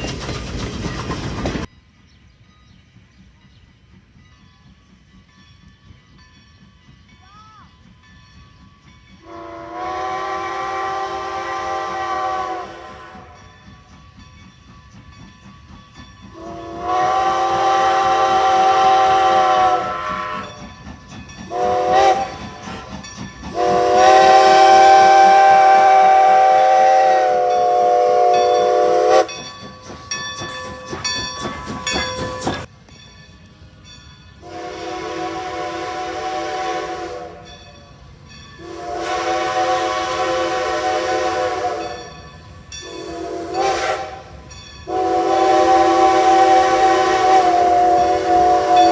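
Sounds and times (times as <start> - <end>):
steam locomotive whistle blasts: 9.2 - 13.7, 16.3 - 20.7, 21.5 - 31.0, 34.4 - 37.6, 38.6 - 48.9
hiss of steam: 9.8 - 32.7, 44.9 - 48.9.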